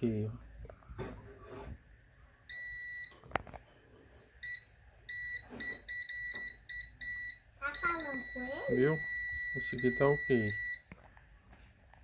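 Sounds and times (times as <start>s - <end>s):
multimeter beeping: 2.5s - 3.2s, 4.4s - 10.9s.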